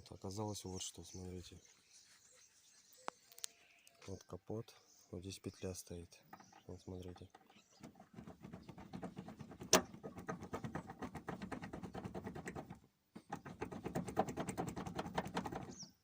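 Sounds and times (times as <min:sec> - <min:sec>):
bonnet hinge knocking and rattling: 0:06.2 - 0:15.9.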